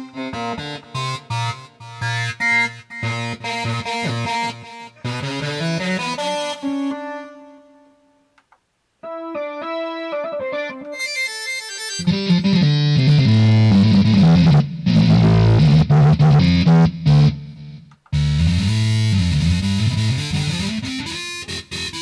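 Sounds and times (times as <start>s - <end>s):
keytar synth notes: 18.2s - 22.0s.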